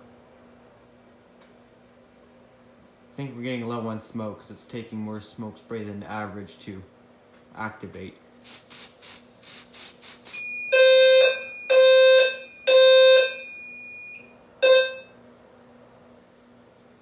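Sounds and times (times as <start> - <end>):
aerosol spray hisses: 8.4 - 10.4
steady high beep: 10.3 - 15.1
fire alarm low beeps: 10.4 - 15.2.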